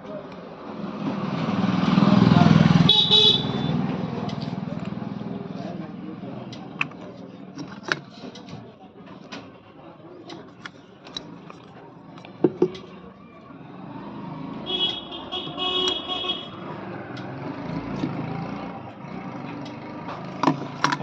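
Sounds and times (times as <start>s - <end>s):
street traffic: 0.0s - 21.0s
vehicle horn pulses: 2.8s - 3.8s, 14.6s - 16.6s
parts clicking and tapping: 6.5s - 8.6s, 10.2s - 13.0s, 19.5s - 21.0s.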